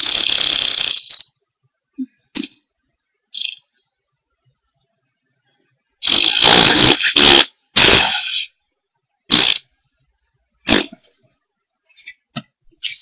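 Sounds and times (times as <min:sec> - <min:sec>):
loud fart sounds: 0:00.0 - 0:01.2, 0:02.3 - 0:02.6, 0:06.0 - 0:08.6, 0:09.3 - 0:09.7, 0:10.6 - 0:11.1.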